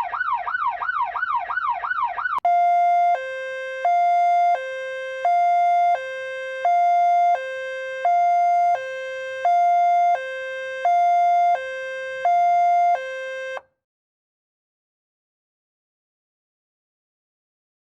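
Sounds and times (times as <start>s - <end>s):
two-tone police siren: 0.0s - 13.7s.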